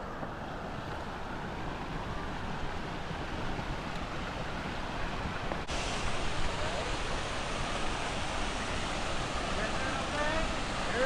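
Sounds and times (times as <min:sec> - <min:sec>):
waterfall rushing: 0:00.0 - 0:11.0
wind rumbling on microphone: 0:00.0 - 0:11.0.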